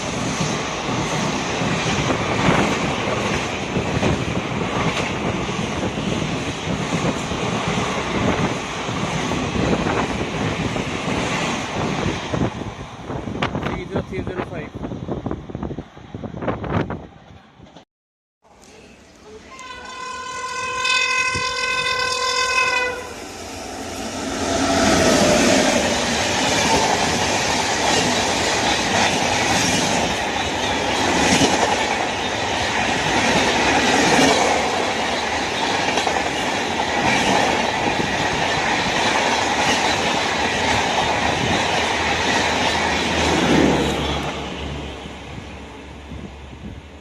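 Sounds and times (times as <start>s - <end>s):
train rushing past: 0.0s - 17.8s, 18.9s - 47.0s
locomotive horn: 19.3s - 23.2s.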